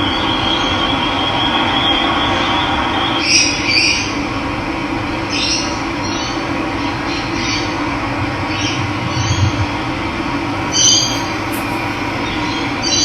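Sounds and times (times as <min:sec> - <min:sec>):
bird calls: 0:10.6 - 0:13.0
running water: 0:10.6 - 0:13.0.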